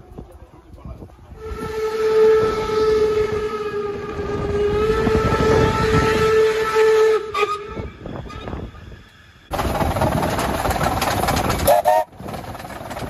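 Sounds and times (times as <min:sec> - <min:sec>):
rushing train noise: 0:00.0 - 0:13.0
steam locomotive whistle: 0:01.4 - 0:08.8, 0:11.6 - 0:12.1.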